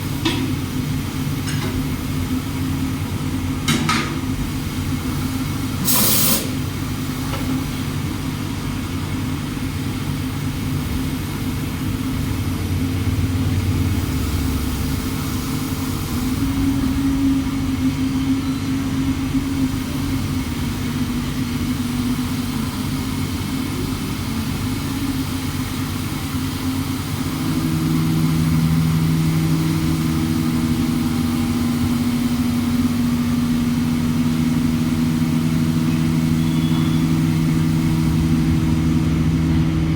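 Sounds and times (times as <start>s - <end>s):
short hissing burst: 5.8s - 6.6s
machine humming: 6.6s - 39.9s.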